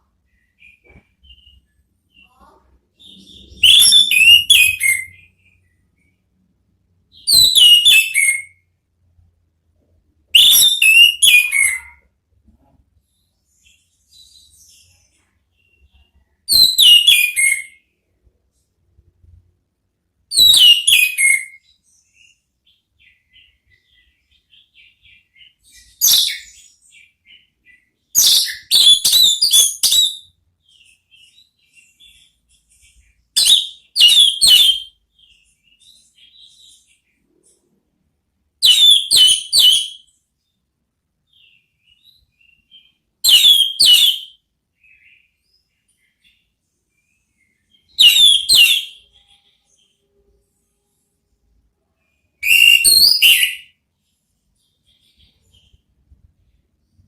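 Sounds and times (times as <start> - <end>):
soft bird twittering: 0.0 - 6.2
bird whistling song: 0.3 - 6.2, 7.1 - 8.6, 10.3 - 12.1, 13.5 - 17.9, 20.3 - 37.0, 38.6 - 40.1, 41.3 - 46.4, 47.0 - 49.9, 52.4 - 53.8.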